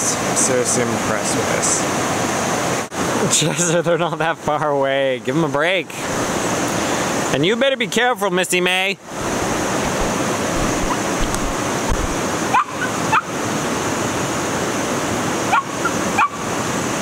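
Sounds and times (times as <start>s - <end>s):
creek water rushing: 0.0s - 3.4s, 6.0s - 7.4s, 9.0s - 17.0s.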